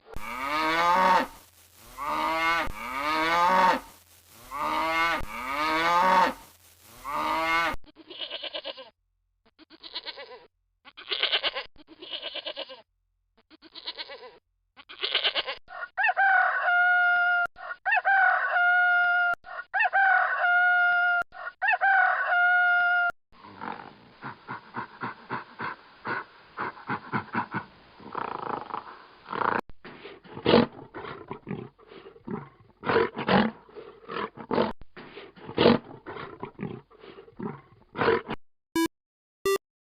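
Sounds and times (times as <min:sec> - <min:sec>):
animal bleating calls: 0:07.0 - 0:08.9, 0:09.6 - 0:12.8, 0:13.4 - 0:15.7.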